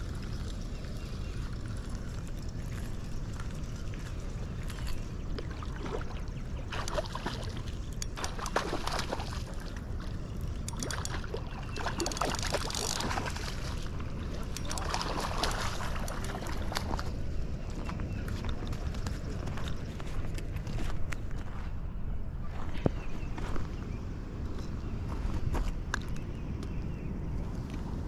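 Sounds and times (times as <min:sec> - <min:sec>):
water splashing: 0:05.3 - 0:17.2.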